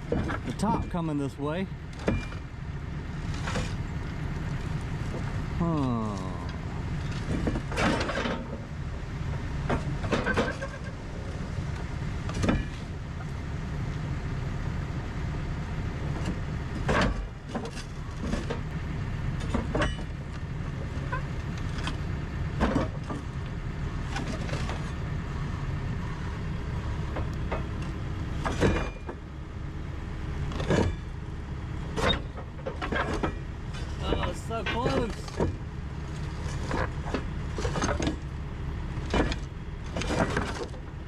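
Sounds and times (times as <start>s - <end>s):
diesel engine running: 0.0s - 41.0s
metallic clank: 27.1s - 29.2s.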